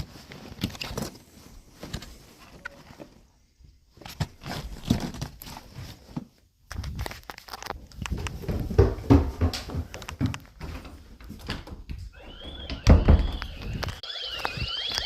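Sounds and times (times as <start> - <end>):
rustling: 0.0 - 9.0.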